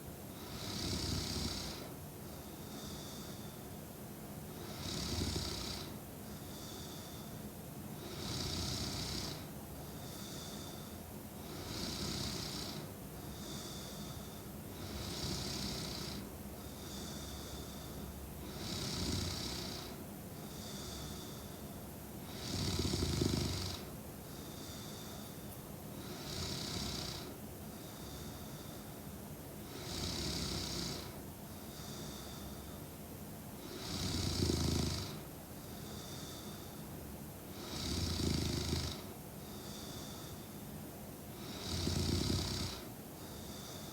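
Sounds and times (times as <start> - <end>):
woman snoring: 0.4 - 1.9, 4.7 - 6.0, 8.0 - 9.5, 11.4 - 13.9, 14.8 - 16.3, 18.4 - 20.0, 22.2 - 23.9, 26.0 - 27.4, 29.7 - 31.2, 33.6 - 35.3, 37.5 - 40.4, 41.4 - 43.9.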